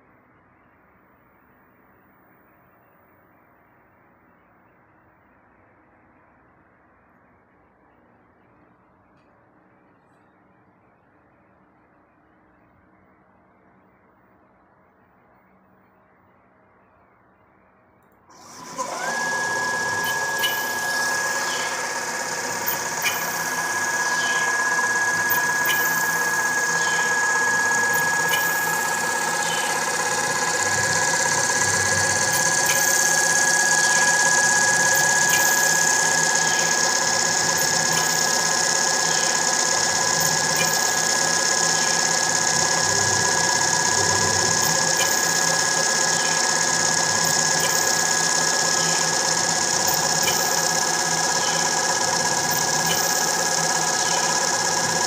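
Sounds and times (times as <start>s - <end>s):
machine running with high whine: 10.9s - 55.0s
small clicks: 19.0s - 55.0s.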